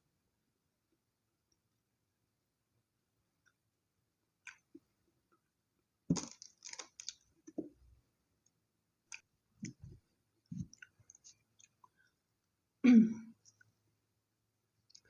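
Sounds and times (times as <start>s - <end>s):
close chewing of toast: 6.1s - 7.8s, 9.1s - 12.2s.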